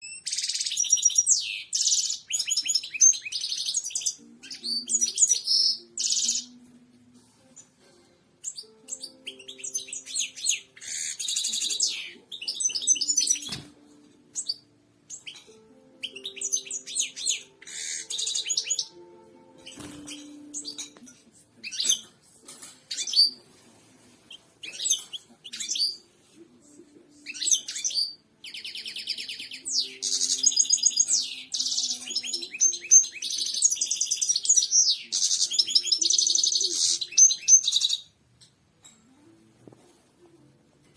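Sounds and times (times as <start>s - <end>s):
bird twittering song: 0.0s - 6.6s, 8.4s - 13.7s, 14.3s - 19.0s, 19.6s - 22.1s, 27.2s - 38.2s.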